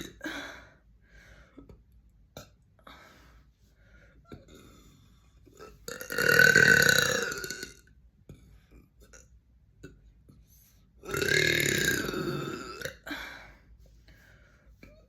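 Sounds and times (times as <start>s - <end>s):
person burping: 0.0s - 0.4s, 5.6s - 7.9s, 11.0s - 13.2s.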